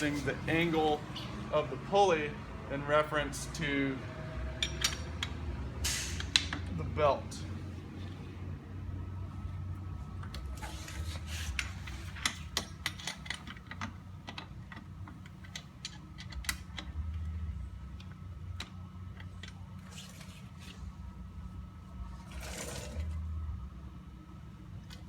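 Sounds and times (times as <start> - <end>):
low steady hum: 0.0 - 25.0.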